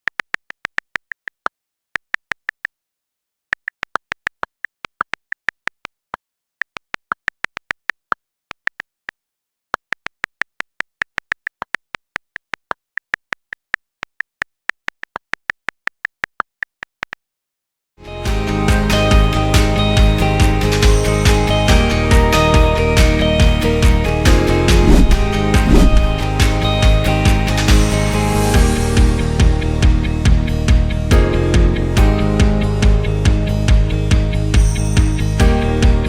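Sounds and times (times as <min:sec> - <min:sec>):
music: 0:18.0 - 0:36.0.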